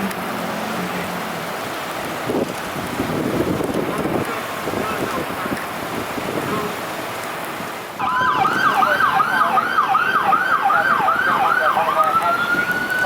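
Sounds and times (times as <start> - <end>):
steady background noise: 0.0 - 13.0
emergency vehicle siren: 8.0 - 13.0.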